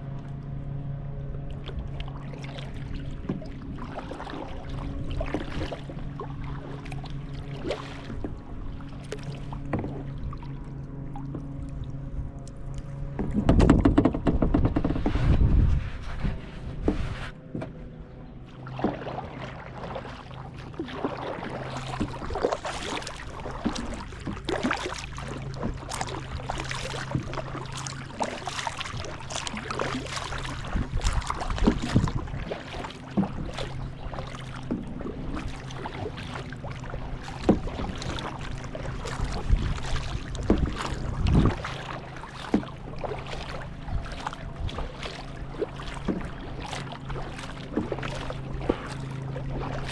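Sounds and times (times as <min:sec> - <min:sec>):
steady low hum: 0:00.0 - 0:49.9
paddle splashing in water: 0:01.3 - 0:49.9
knocks on kayak hull: 0:13.2 - 0:15.2.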